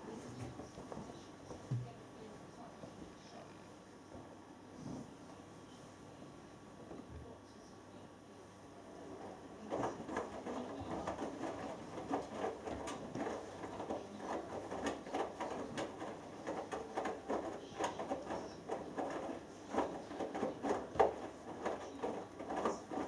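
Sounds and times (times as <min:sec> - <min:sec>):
washing machine drum tumbling laundry: 0:09.1 - 0:23.0.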